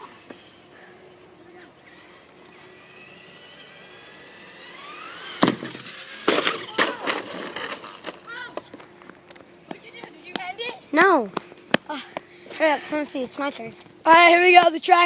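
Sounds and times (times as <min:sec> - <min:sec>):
toy truck motor whine: 0:01.9 - 0:08.2.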